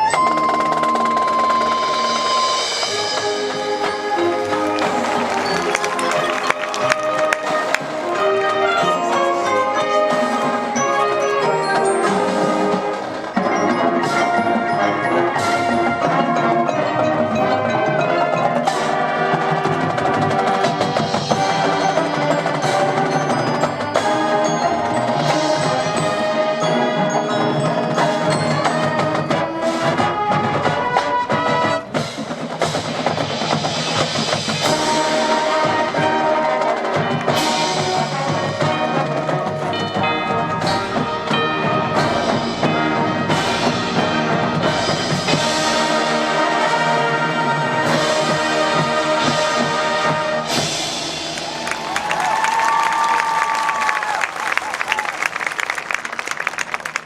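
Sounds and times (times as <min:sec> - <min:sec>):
pitched percussion struck: 0:00.0 - 0:10.8
marching band playing: 0:00.0 - 0:57.0.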